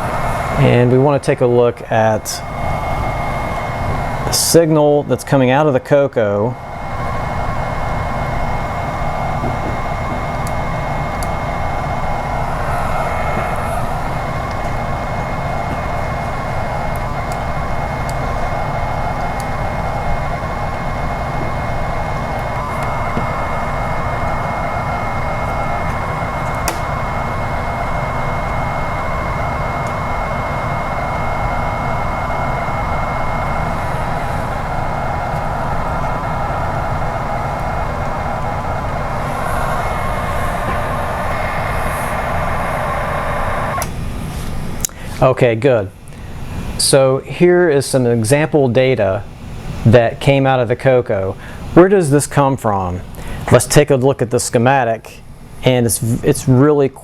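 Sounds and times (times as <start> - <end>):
thin steady whistle: 0.0 - 45.2.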